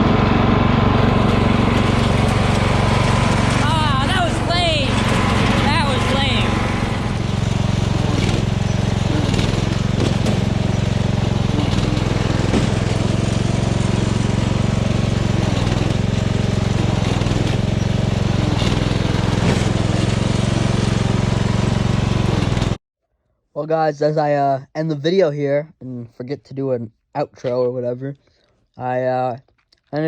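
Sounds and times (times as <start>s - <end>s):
lawn tractor engine running: 0.0s - 22.8s.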